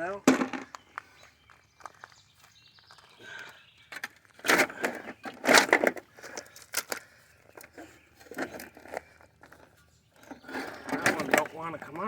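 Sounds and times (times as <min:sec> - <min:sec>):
metal clanks and scrapes: 0:07.6 - 0:11.6.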